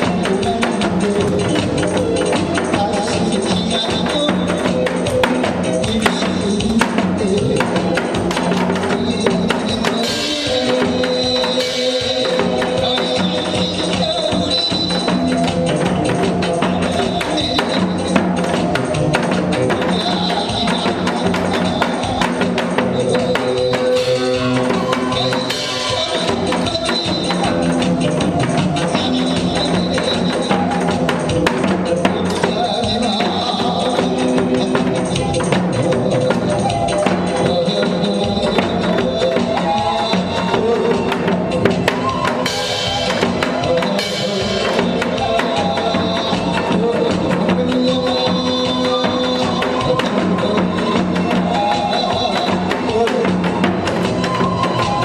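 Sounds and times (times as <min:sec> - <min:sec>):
music with steady beat: 0:00.0 - 0:55.0.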